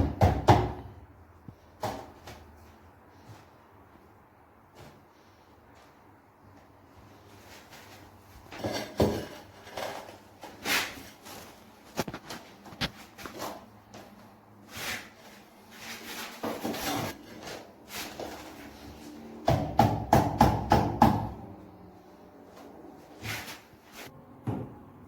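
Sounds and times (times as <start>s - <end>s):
tools scraping and rubbing: 14.7s - 19.2s.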